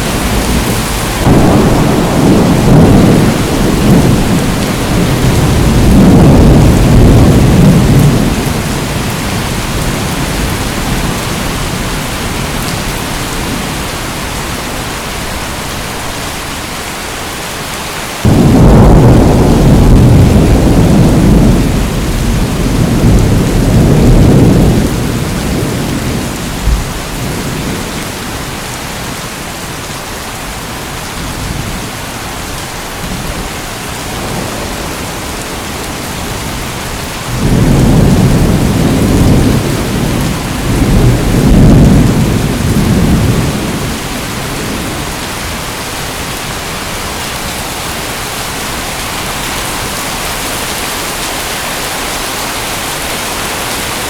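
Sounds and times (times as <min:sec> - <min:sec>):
thunder rumbling: 0:00.0 - 0:14.6, 0:18.2 - 0:28.7, 0:33.0 - 0:50.0
steady rain: 0:00.0 - 0:54.0.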